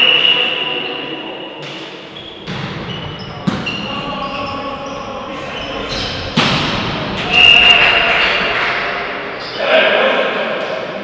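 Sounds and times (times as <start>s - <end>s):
players' voices echoing: 0.0s - 11.0s
shoe squeaks: 2.1s - 6.4s, 9.4s - 9.7s
volleyball struck with thuds: 2.4s - 3.8s.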